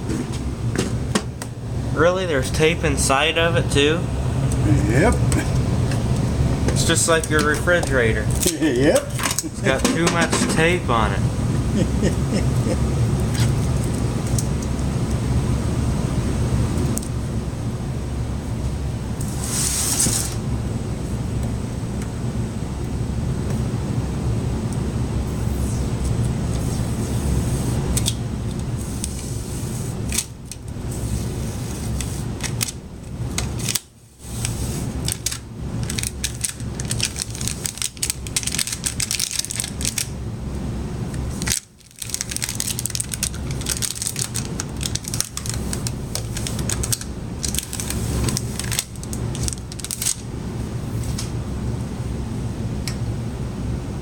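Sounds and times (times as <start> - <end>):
packing tape peeling: 19.2 - 20.4, 28.8 - 40.1, 41.3 - 50.3.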